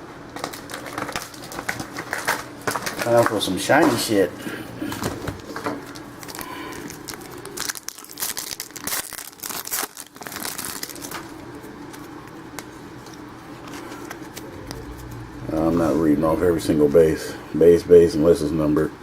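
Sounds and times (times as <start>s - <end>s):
wrapper tearing and crinkling: 0.3s - 4.2s, 5.4s - 15.2s
cards rustling: 0.3s - 17.1s.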